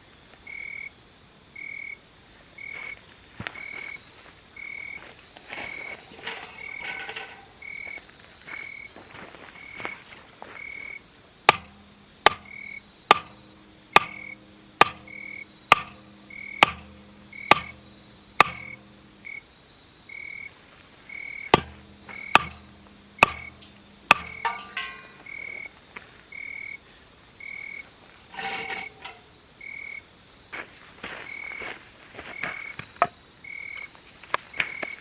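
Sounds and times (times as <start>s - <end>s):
hammer striking metal stake: 6.1s - 7.6s, 11.5s - 19.2s, 21.5s - 25.6s, 28.3s - 29.3s
metal rattle: 6.1s - 7.9s, 11.5s - 19.0s, 21.5s - 25.7s, 28.3s - 29.3s.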